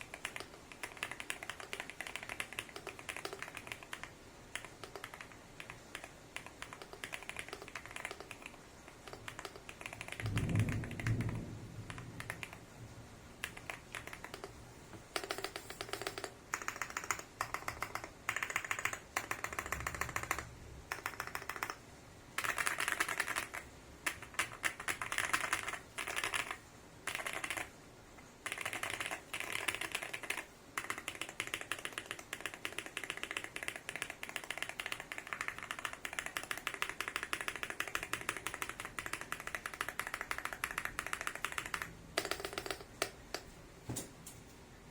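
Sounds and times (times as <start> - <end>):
mechanical keyboard key clacks: 28.4 - 43.1.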